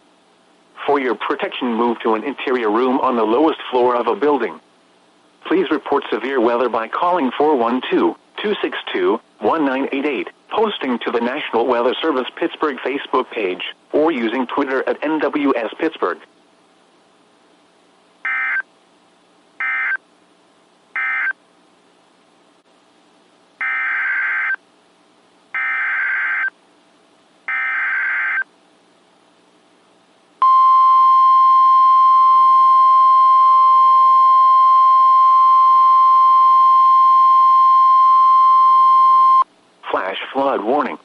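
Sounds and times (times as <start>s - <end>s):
steady warning alarm tone: 18.2s - 18.6s, 19.6s - 20.0s, 21.0s - 21.4s, 23.6s - 24.6s, 25.6s - 26.5s, 27.5s - 28.5s
buzzing data bursts: 18.3s - 18.6s.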